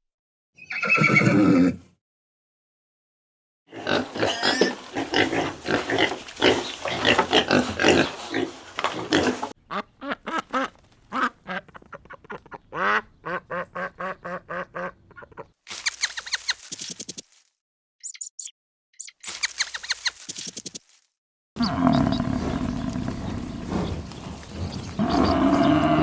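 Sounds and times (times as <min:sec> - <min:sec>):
farm animals calling: 0:03.7 - 0:16.4, 0:21.6 - 0:26.0
high-pitched chirps: 0:18.0 - 0:20.8.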